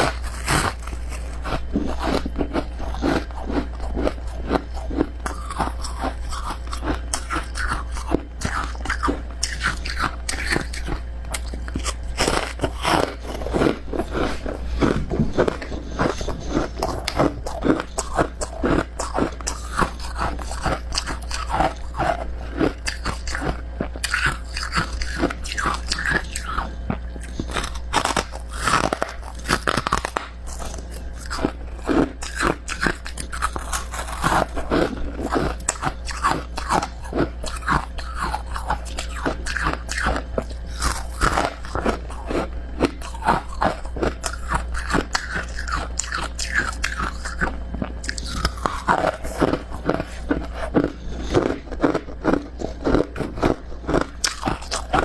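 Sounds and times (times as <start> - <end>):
crunching ice: 0.0 - 55.0
steady low hum: 0.0 - 55.0.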